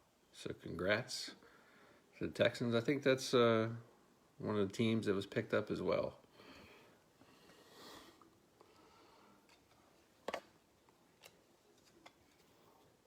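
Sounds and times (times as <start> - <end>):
trading cards and packaging handled: 9.5 - 13.0.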